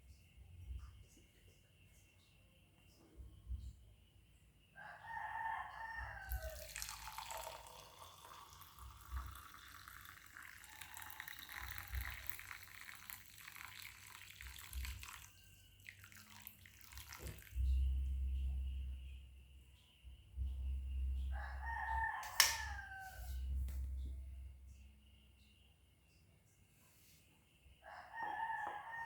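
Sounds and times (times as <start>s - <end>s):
rooster crowing: 4.8s - 8.9s, 10.5s - 12.0s, 21.2s - 23.6s, 27.8s - 29.0s
water running and splashing: 6.6s - 17.6s
low rumble: 17.6s - 19.5s.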